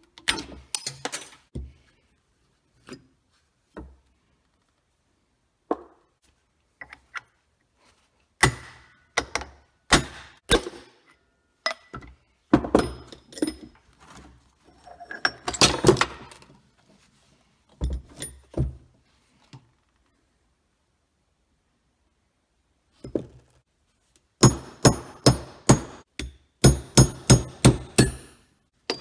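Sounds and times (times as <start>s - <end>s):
metal parts and tools clinking: 0.2s - 1.5s, 14.7s - 16.5s, 28.0s - 29.0s.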